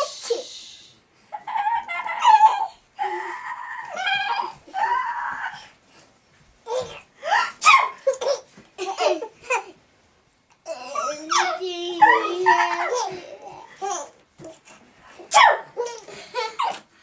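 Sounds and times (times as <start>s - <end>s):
toddler laughing and squealing: 1.3s - 5.6s, 11.0s - 14.1s.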